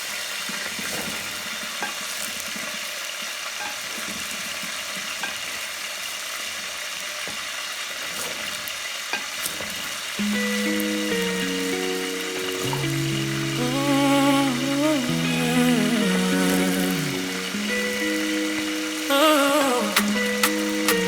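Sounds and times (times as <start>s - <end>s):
food sizzling in a pan: 0.0s - 21.0s
synth background music: 10.2s - 19.2s, 19.8s - 21.0s.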